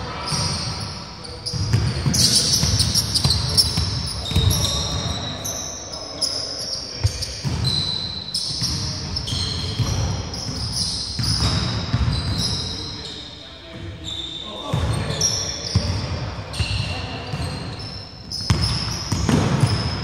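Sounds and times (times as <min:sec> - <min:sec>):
players' voices: 0:00.0 - 0:20.0
sneakers squeaking on floor: 0:00.0 - 0:20.0
basketball bouncing on wooden court: 0:01.4 - 0:05.1, 0:07.0 - 0:07.8, 0:08.6 - 0:12.6, 0:15.7 - 0:20.0.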